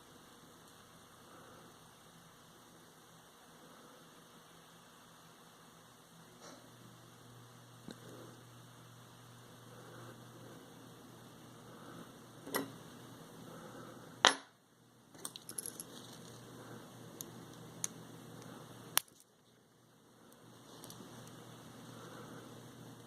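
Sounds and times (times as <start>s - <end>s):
steady low hum: 0.0s - 23.0s
small metal parts clicking: 15.2s - 16.4s.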